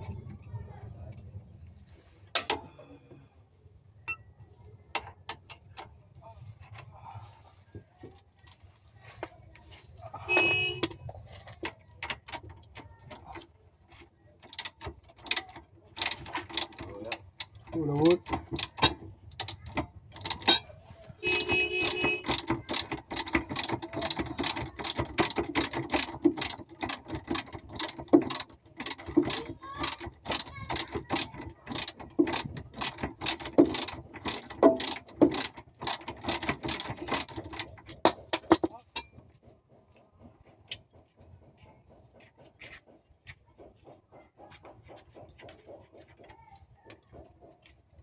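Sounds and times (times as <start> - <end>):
ratchet wrench clicking: 2.4 - 2.8, 14.5 - 38.6.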